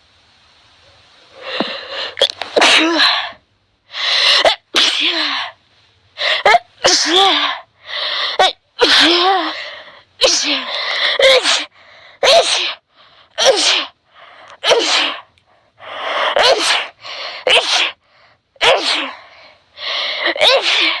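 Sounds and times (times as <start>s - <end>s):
person sneezing: 1.4s - 3.4s, 4.2s - 5.5s, 6.2s - 7.5s, 10.2s - 12.8s, 13.4s - 15.3s, 16.1s - 18.0s, 18.6s - 19.2s, 19.8s - 21.0s
sharp in-breaths: 10.6s - 21.0s.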